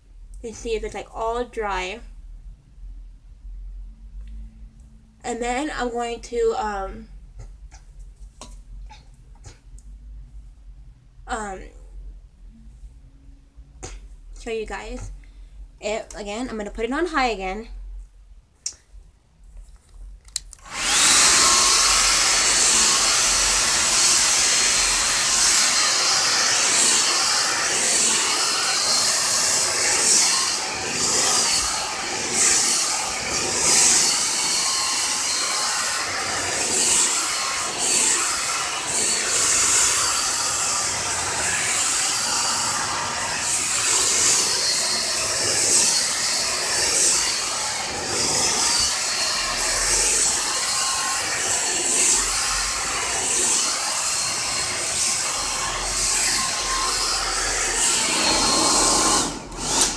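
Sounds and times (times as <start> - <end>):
blow-dryer rushing air: 20.6 - 59.9.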